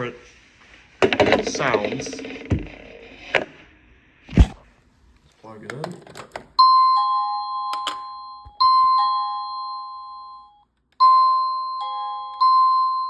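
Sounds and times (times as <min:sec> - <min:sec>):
two-note doorbell chime: 0:06.6 - 0:13.0.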